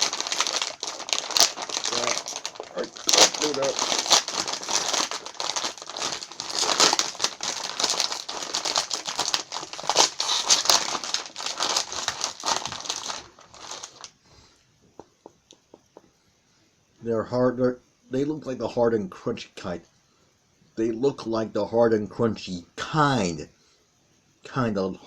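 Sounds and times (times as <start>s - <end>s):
packaging crackling and rustling: 0.0s - 14.2s.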